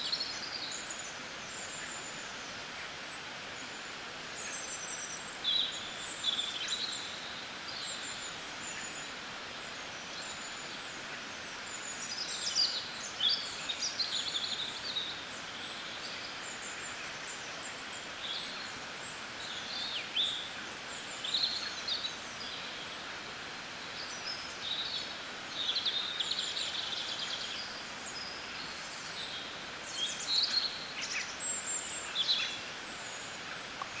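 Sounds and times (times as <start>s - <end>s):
outdoor background hiss: 0.0s - 34.0s
small songbirds chirping: 23.8s - 34.0s.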